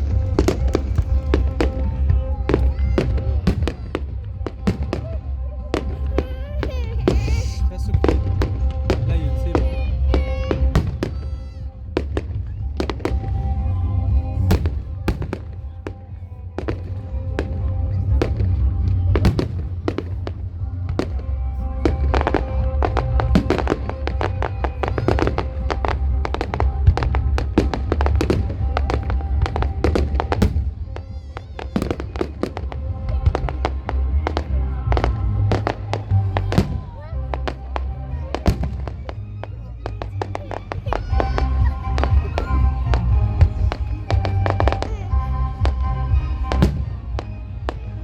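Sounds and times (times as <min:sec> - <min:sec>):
fireworks bangs with crackle: 0:00.0 - 0:13.8, 0:16.6 - 0:21.2, 0:21.8 - 0:34.4, 0:45.6 - 0:47.8
music with heavy bass: 0:00.0 - 0:30.8, 0:31.8 - 0:48.0.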